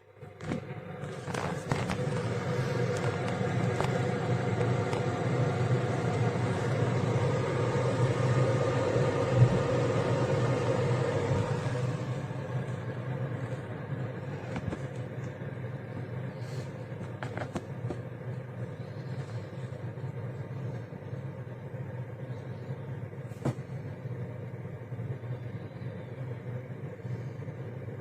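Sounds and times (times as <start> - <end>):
low mechanical hum: 0.0 - 28.0.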